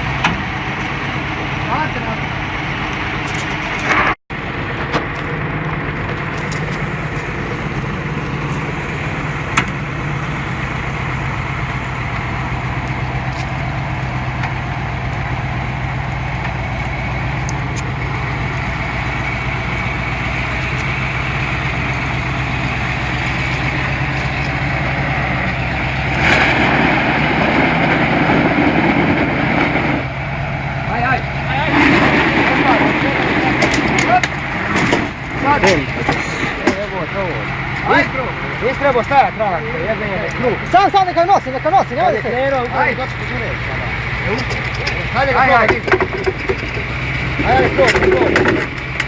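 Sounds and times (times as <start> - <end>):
tractor engine running: 0.0 - 49.0.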